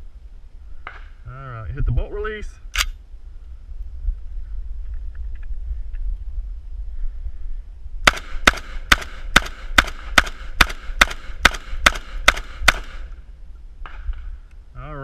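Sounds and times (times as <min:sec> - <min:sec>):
shotgun firing rapidly: 0:08.0 - 0:13.0.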